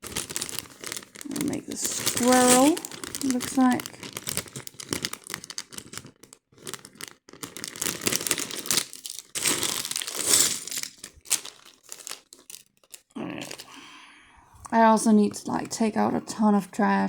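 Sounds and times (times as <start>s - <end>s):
plastic bag crinkling: 0.0s - 13.8s
small plastic pieces clicking: 1.8s - 13.7s.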